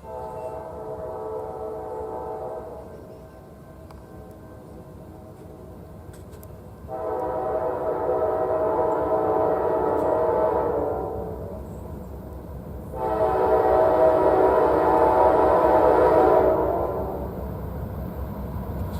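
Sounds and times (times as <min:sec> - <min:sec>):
locomotive air horn blasts: 0:00.0 - 0:03.2, 0:06.9 - 0:11.7, 0:12.9 - 0:17.4
passing train rumble: 0:00.0 - 0:18.9.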